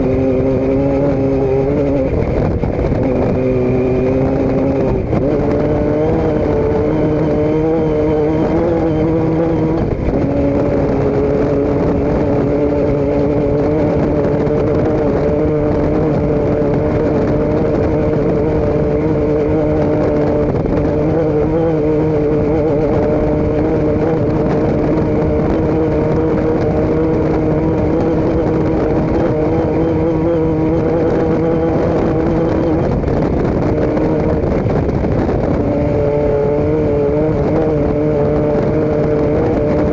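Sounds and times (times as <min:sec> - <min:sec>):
vehicle engine droning: 0:00.0 - 0:39.9.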